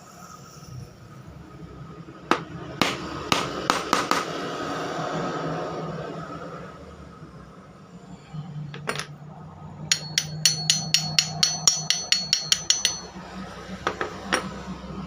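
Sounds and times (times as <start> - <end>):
hammer tapping on metal: 2.3 - 4.4, 9.9 - 13.2, 13.9 - 14.6.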